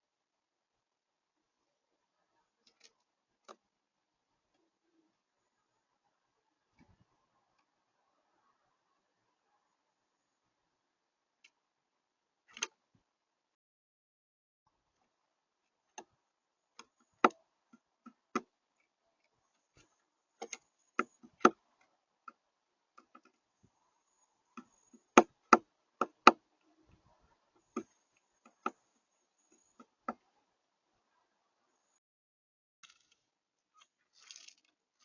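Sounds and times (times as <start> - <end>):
birds pecking at a feeder: 15.8 - 30.3.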